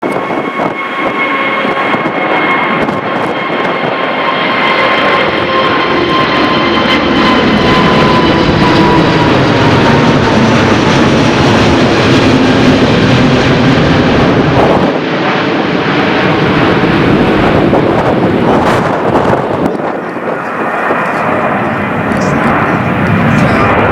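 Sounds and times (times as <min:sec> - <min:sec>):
jet engines roaring: 0:00.0 - 0:23.9
high whining tones: 0:19.6 - 0:23.9.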